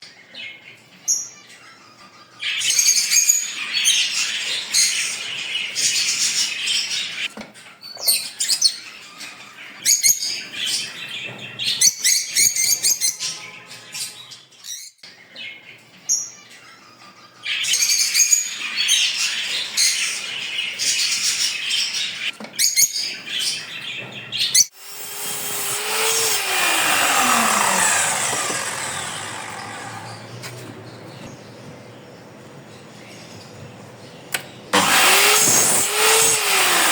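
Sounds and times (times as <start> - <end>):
whirring falling in pitch: 24.7 - 30.8, 34.8 - 36.9.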